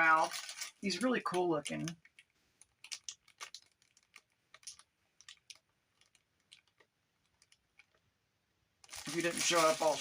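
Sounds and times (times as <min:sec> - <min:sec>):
small clicks and taps: 0:01.3 - 0:08.1.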